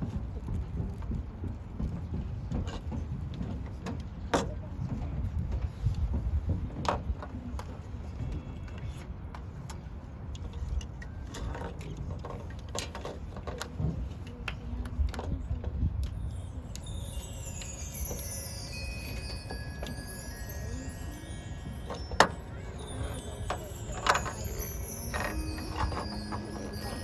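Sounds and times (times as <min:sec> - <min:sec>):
knocks and clatter of instruments: 0:00.0 - 0:07.9, 0:15.1 - 0:27.0
shimmering chime run: 0:16.2 - 0:27.0.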